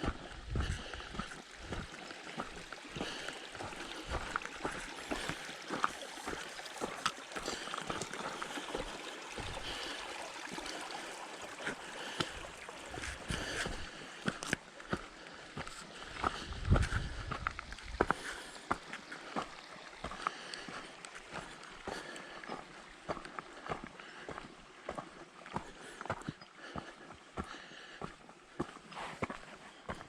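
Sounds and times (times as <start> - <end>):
footsteps on trail: 0.0 - 30.0
stream running: 0.0 - 30.0.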